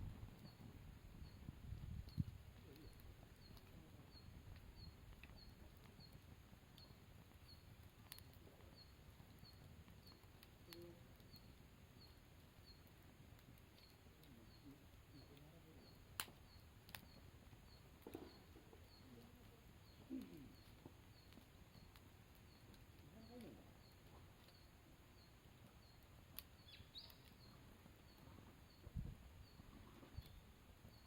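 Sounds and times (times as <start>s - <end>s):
burning wood popping: 0.0s - 31.0s
faint high chirp: 6.8s - 12.9s, 22.6s - 31.0s.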